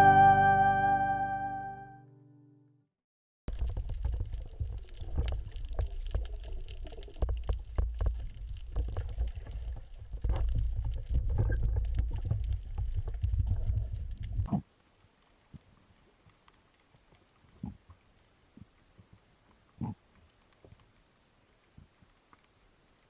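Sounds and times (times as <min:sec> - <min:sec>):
low underwater rumble: 0:03.5 - 0:14.5
sharp clicks and crackles: 0:03.5 - 0:23.0.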